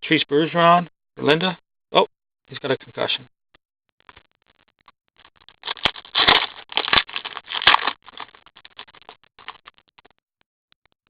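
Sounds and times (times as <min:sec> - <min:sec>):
card packaging crinkling: 0:05.4 - 0:10.1.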